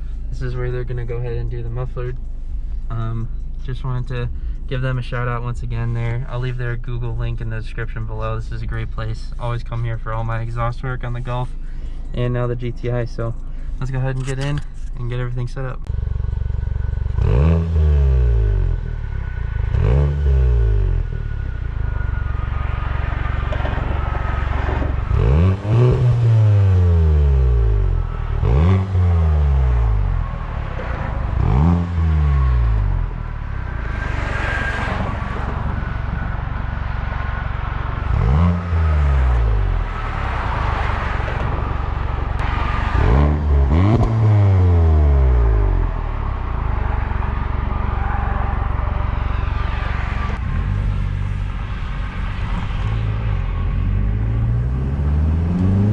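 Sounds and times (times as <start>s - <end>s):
car engine idling and revving: 0.0s - 55.9s.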